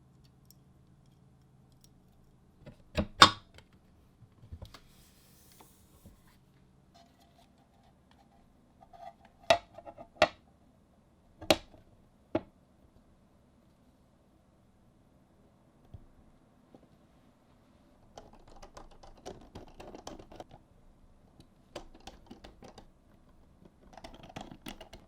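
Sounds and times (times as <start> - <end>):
keyboard parts clicking and knocking: 11.4 - 12.5, 18.0 - 20.6, 21.7 - 25.0.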